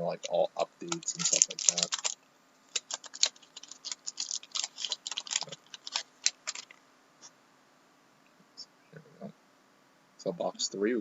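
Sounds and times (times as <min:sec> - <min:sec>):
typing on keyboard: 0:00.9 - 0:06.8.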